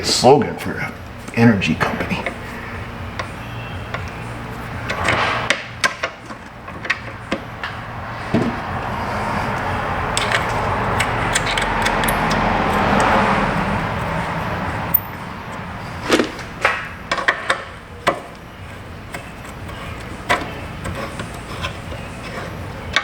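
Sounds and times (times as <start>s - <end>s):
steady rushing noise: 0.1s - 17.9s
hand tools clicking and knocking: 3.9s - 8.6s, 9.4s - 15.3s, 16.1s - 23.0s.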